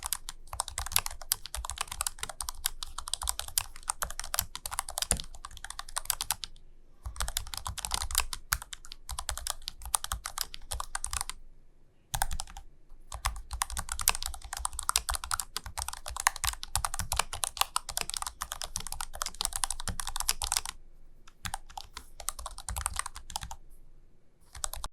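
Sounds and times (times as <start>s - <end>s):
keyboard keystrokes: 0.0s - 6.5s, 12.1s - 23.6s, 24.5s - 24.9s.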